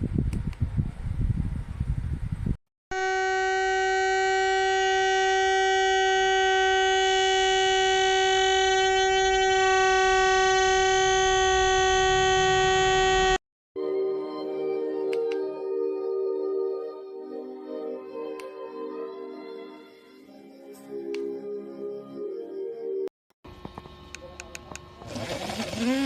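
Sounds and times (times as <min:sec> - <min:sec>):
small electric motor whining: 0:25.0 - 0:26.0.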